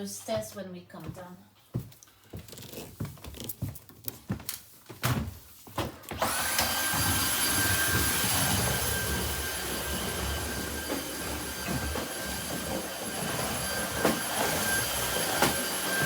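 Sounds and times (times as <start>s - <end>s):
stick vacuum running: 6.1s - 16.0s.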